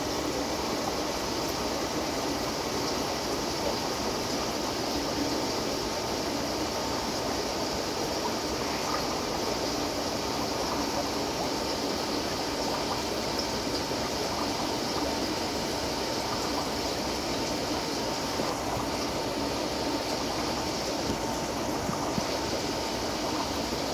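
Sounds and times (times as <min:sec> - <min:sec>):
faint steady hum: 0:00.0 - 0:23.9
water trickling: 0:00.0 - 0:23.9.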